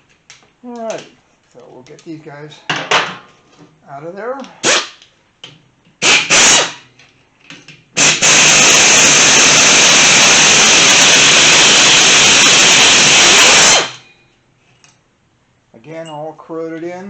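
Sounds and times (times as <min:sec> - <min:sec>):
handheld power tool running: 0:06.0 - 0:06.8, 0:08.0 - 0:14.0.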